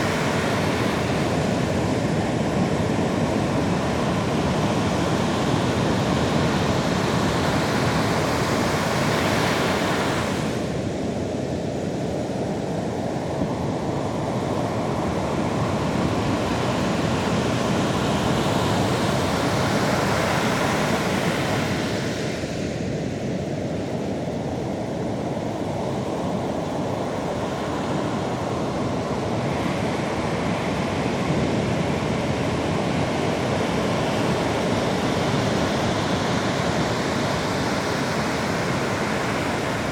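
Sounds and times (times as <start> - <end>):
waves breaking on shore: 0.0 - 39.9.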